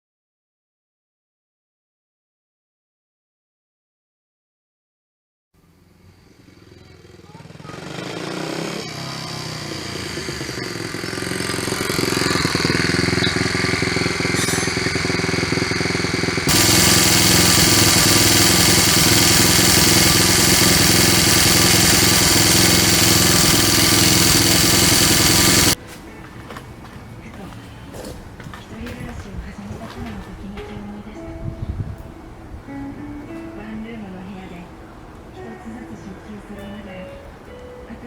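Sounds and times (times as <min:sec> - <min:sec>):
small engine clattering: 0:07.4 - 0:25.8.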